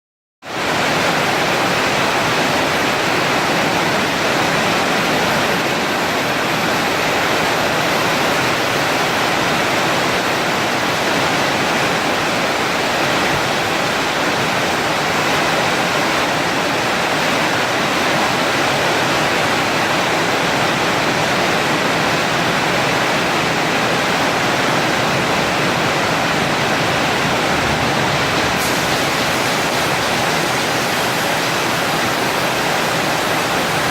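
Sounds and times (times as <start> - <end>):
cutting torch hissing: 27.6 - 33.9.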